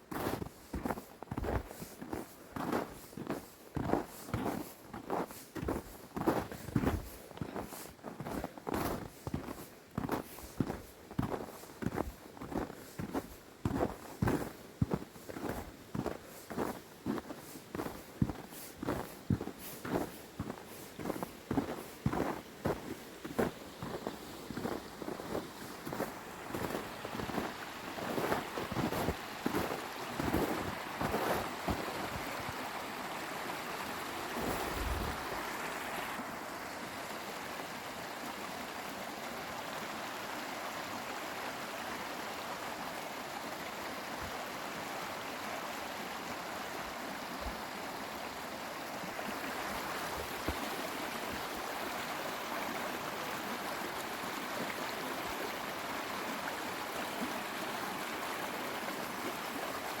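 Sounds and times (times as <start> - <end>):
stream water rushing: 0.0 - 60.0
wind bumps on microphone: 34.6 - 35.2.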